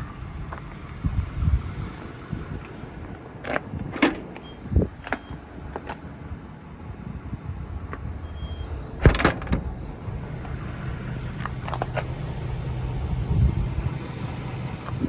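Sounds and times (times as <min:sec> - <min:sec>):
sharp clunk: 0:03.9 - 0:05.3, 0:09.0 - 0:09.7.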